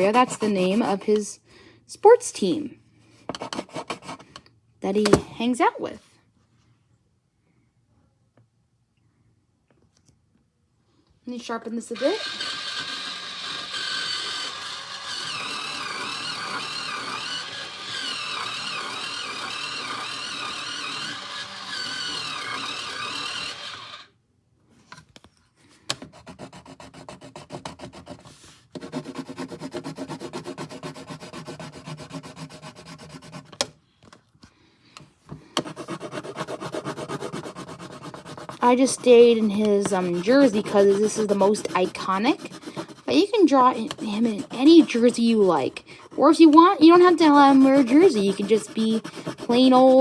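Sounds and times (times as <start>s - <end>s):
pencil scratching on paper: 0.0s - 1.2s, 3.3s - 4.3s, 12.2s - 23.8s, 25.9s - 33.6s, 35.6s - 50.0s
pencil sharpener grinding: 0.0s - 1.2s, 3.4s - 4.3s, 12.0s - 24.1s, 28.8s - 33.6s, 35.6s - 50.0s.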